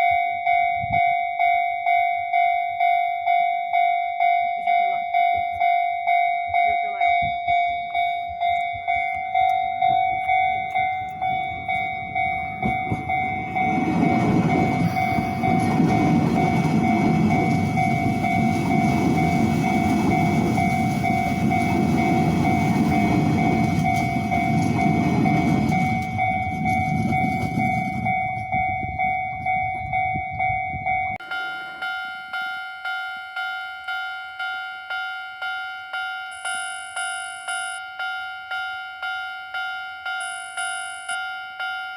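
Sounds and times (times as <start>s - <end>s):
level-crossing warning bell ringing: 0.0s - 41.9s
train rumbling over crossing: 1.9s - 35.1s.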